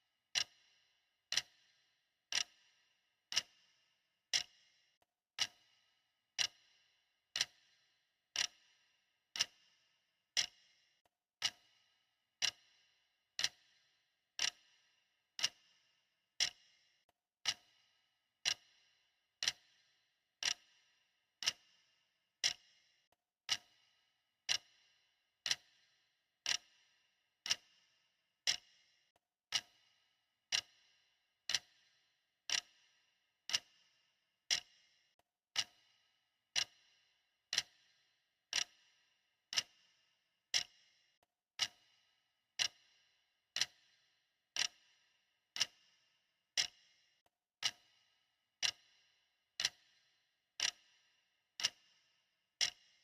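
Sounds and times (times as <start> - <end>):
clock ticking: 0.3 - 0.6, 1.3 - 1.6, 2.3 - 2.6, 3.3 - 3.6, 4.3 - 4.6, 5.4 - 5.7, 6.4 - 6.6, 7.4 - 7.6, 8.4 - 8.6, 9.4 - 9.6, 10.4 - 10.6, 11.4 - 11.7, 12.4 - 12.7, 13.4 - 13.6, 14.4 - 14.6, 15.4 - 15.6, 16.4 - 16.6, 17.4 - 17.7, 18.4 - 18.7, 19.4 - 19.7, 20.4 - 20.7, 21.4 - 21.6, 24.5 - 24.7, 25.4 - 25.7, 26.4 - 26.7, 27.4 - 27.7, 29.5 - 29.8, 30.5 - 30.8, 31.5 - 31.8, 32.5 - 32.8, 33.5 - 33.8, 35.5 - 35.8, 36.5 - 36.8, 37.5 - 37.8, 38.5 - 38.8, 39.5 - 39.8, 40.5 - 40.7, 42.6 - 42.8, 43.6 - 43.9, 44.6 - 44.8, 45.6 - 45.8, 46.6 - 46.8, 47.6 - 47.9, 48.6 - 48.9, 49.6 - 49.9, 50.6 - 50.8, 51.6 - 51.8, 52.6 - 52.8.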